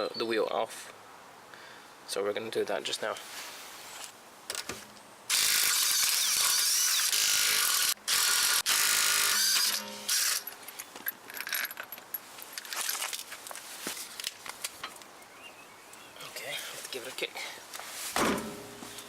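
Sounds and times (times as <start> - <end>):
power tool spinning: 5.3 - 10.5
small clicks and knocks of nuts: 9.6 - 15.1.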